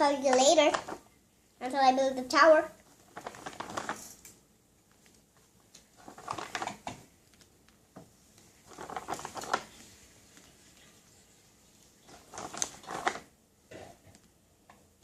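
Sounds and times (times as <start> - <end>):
plastic cans knocking and rustling: 3.0 - 4.1, 6.0 - 7.1, 8.7 - 9.8, 12.1 - 14.0.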